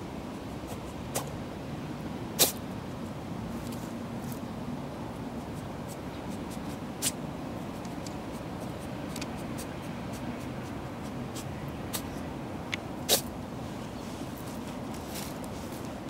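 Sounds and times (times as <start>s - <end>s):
animal sneezing: 2.4s - 2.6s, 13.1s - 13.3s
animal scratching and rustling: 5.4s - 12.2s.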